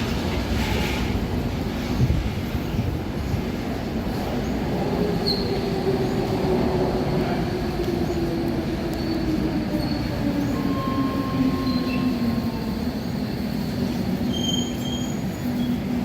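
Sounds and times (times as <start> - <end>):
high wheel squeal: 14.2 - 15.8.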